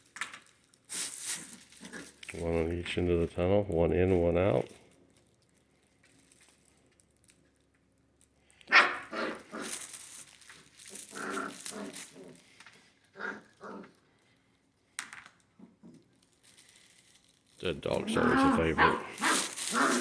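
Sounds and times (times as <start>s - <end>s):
puppies growling and yapping: 1.6s - 2.2s, 8.7s - 10.2s, 10.8s - 12.5s, 13.1s - 14.0s, 17.9s - 20.0s.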